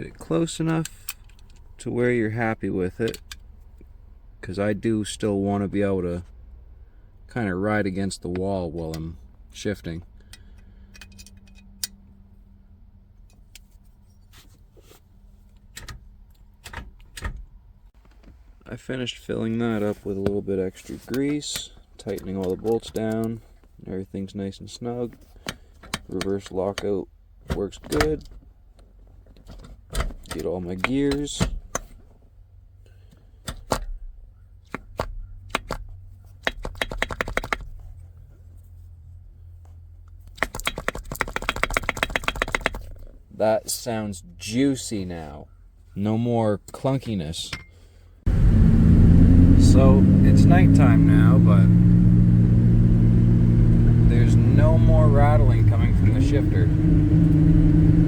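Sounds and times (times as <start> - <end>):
gear shifter clicking and clunking: 15.5 - 18.5, 21.2 - 23.4, 25.2 - 32.0, 48.3 - 58.0
metallic clicks of hand tools: 40.4 - 42.9
steady low hum: 48.3 - 58.0.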